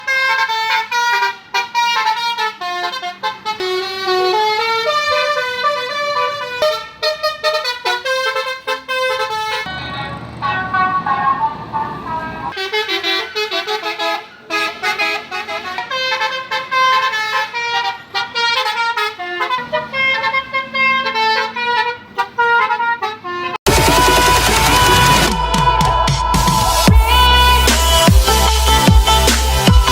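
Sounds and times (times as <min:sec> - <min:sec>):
bus multi-tone horn melody: 0:00.0 - 0:29.9.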